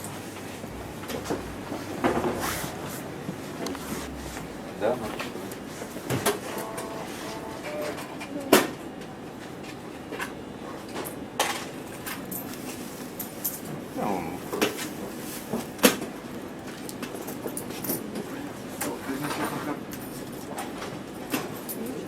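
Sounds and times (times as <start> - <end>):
supermarket background noise: 0.0 - 22.0
faint voices: 0.7 - 8.7, 13.9 - 14.6.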